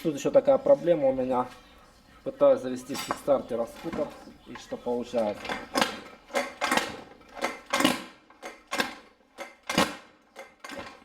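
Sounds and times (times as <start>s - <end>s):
scooter kick-starter clacking: 5.2s - 11.0s.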